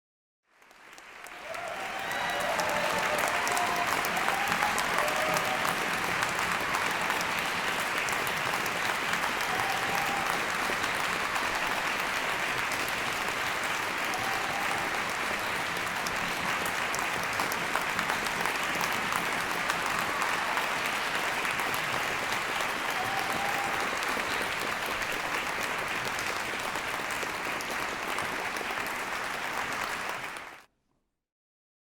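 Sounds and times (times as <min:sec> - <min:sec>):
crowd applauding: 0:00.5 - 0:30.7
shouts and whoops of cheering: 0:01.2 - 0:11.8, 0:13.8 - 0:16.1, 0:19.2 - 0:24.6.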